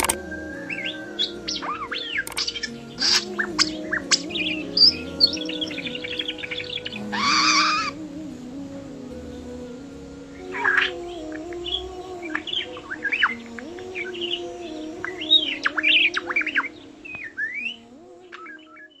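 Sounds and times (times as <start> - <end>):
budgerigar chirping and warbling: 0.6 - 8.0.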